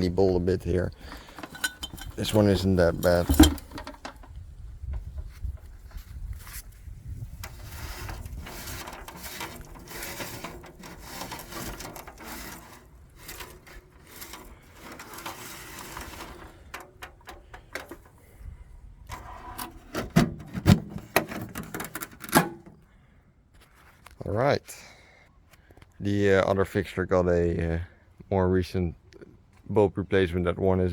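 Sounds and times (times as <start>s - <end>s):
rough rubbing: 0.0s - 4.4s, 5.0s - 18.2s.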